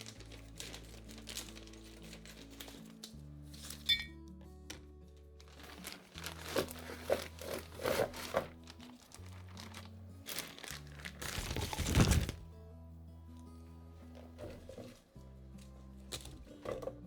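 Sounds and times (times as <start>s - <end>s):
packaging crinkling: 0.0s - 4.0s, 4.7s - 12.5s
background music: 0.0s - 17.0s.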